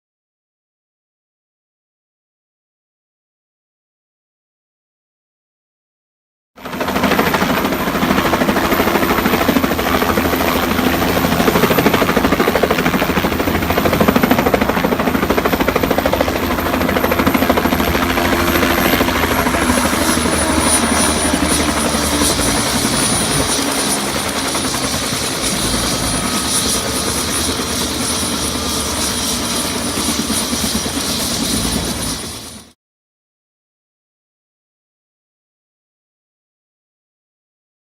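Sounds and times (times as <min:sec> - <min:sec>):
helicopter rotor and turbine: 0:06.6 - 0:32.8
high turbine whine: 0:06.8 - 0:32.8.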